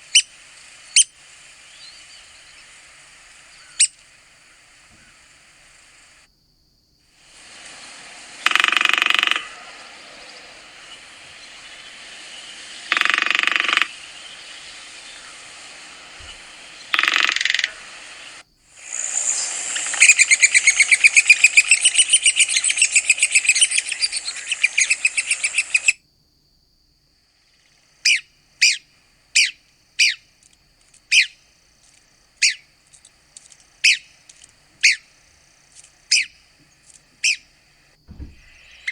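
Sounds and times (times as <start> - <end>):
woodpecker harsh raspy calls: 0.0 - 6.2, 7.2 - 26.0, 27.5 - 38.9
woodpecker rapid chattering: 7.2 - 26.0, 27.6 - 38.9.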